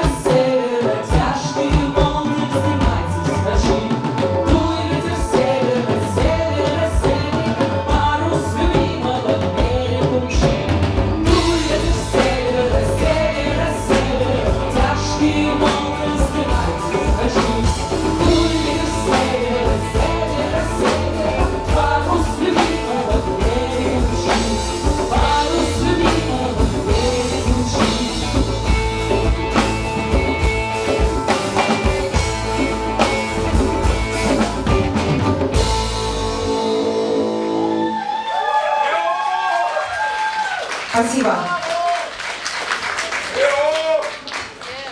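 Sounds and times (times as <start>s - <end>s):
woman singing: 0.0s - 29.1s, 31.1s - 33.3s
drum kit beat: 0.0s - 37.6s
electric guitars: 0.0s - 38.5s
bass guitar: 1.1s - 38.4s.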